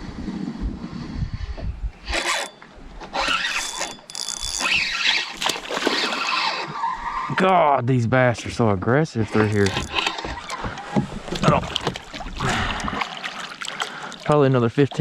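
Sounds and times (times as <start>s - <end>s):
fishing reel drag buzzing: 2.0s - 6.8s, 9.3s - 10.6s.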